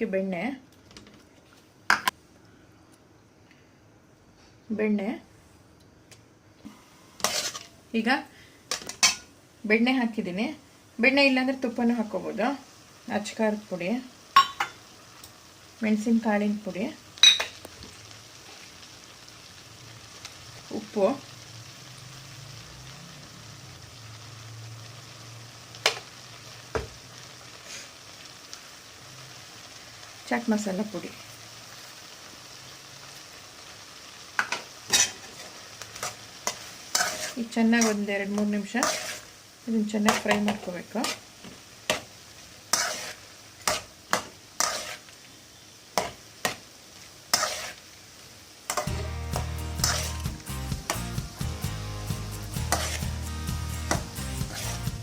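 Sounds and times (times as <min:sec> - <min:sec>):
corn sizzling in a pan: 0:00.0 - 0:55.0
utensil scraping a pan: 0:07.2 - 0:07.8, 0:34.9 - 0:38.0, 0:38.8 - 0:39.3, 0:42.7 - 0:45.1, 0:47.3 - 0:47.8, 0:48.7 - 0:51.0, 0:52.5 - 0:55.0.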